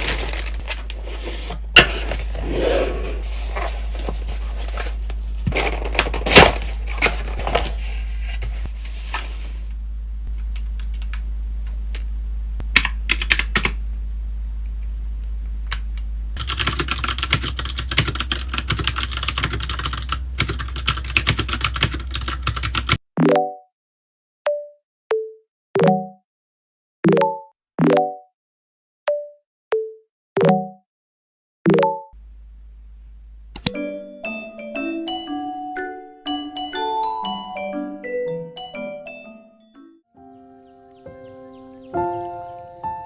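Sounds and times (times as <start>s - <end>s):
steady low hum: 0.0s - 23.0s, 32.2s - 33.8s
typing on computer keyboard: 16.4s - 23.0s.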